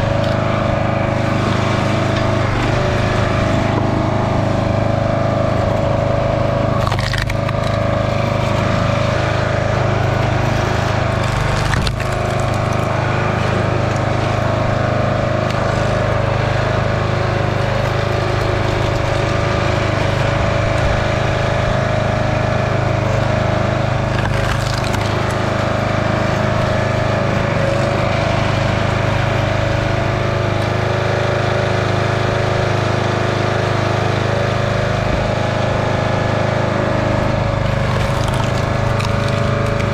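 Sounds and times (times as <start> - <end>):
small gas engine running: 0.0 - 39.9
wood splitting cracks: 5.8 - 14.9, 17.4 - 20.2, 23.9 - 26.0, 37.2 - 39.9.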